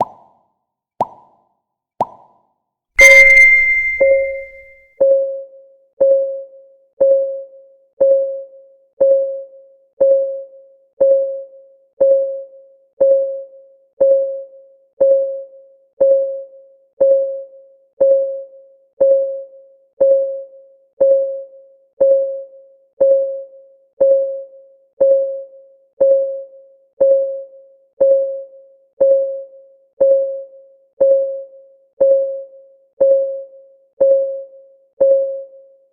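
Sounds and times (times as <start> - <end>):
ringing tone: 3.0 - 4.6.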